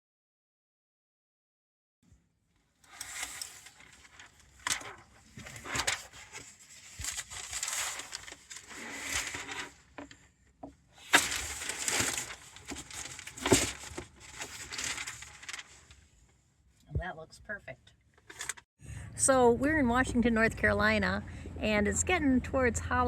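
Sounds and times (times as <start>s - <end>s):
cardboard packaging rustling: 2.8s - 10.2s, 11.0s - 16.0s.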